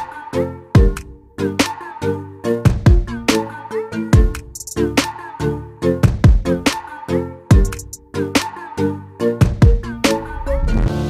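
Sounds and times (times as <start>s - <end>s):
electronic beat music: 0.0s - 11.0s
deep kick drums and bass: 2.7s - 3.2s, 6.0s - 6.5s, 7.5s - 7.9s.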